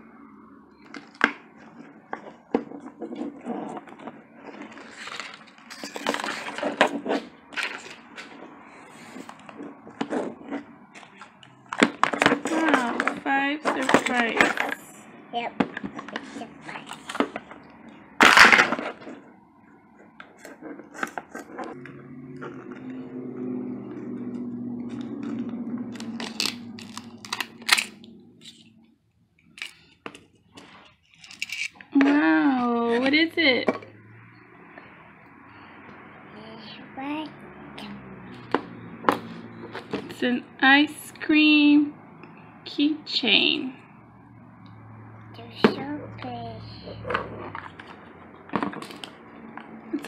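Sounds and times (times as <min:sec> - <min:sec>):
plastic clicks and rustles: 0:00.8 - 0:14.8, 0:15.6 - 0:19.3, 0:20.0 - 0:23.0, 0:29.4 - 0:32.1, 0:47.0 - 0:50.0
plastic packaging crinkling: 0:26.0 - 0:28.0.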